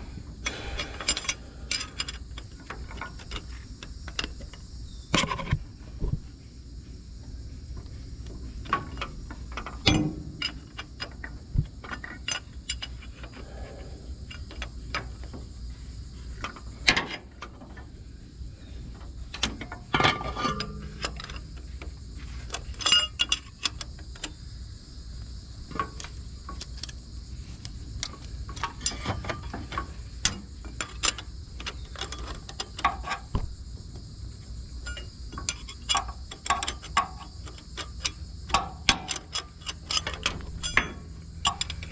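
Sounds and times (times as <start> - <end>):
hand tools clicking and knocking: 0.4 - 5.6, 7.8 - 15.5, 18.9 - 24.4, 27.6 - 33.4, 34.8 - 41.9.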